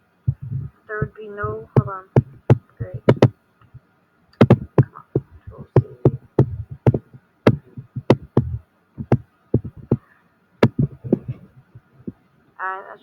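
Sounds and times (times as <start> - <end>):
computer keyboard typing: 0.3 - 3.3, 4.4 - 10.0, 10.6 - 11.4.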